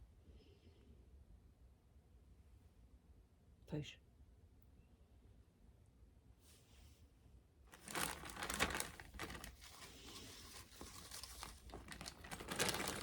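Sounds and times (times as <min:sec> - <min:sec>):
bag crinkling and rustling: 0:07.7 - 0:13.0.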